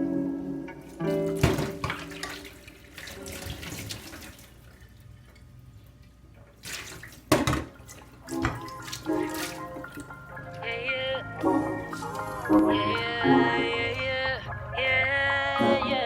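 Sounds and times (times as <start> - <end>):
tap water splashing in sink: 1.3 - 10.6.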